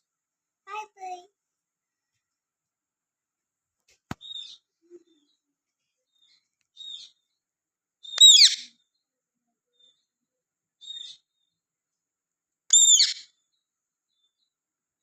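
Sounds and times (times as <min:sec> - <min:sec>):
parakeet calls: 0:08.1 - 0:08.7, 0:12.7 - 0:13.3.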